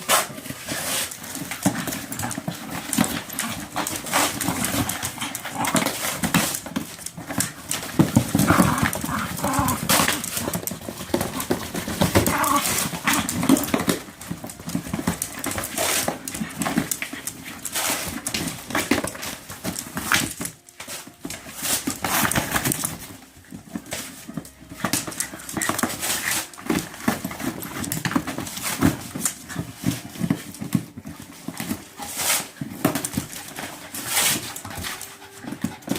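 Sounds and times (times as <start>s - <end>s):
dog tearing and ripping: 0.0s - 35.9s.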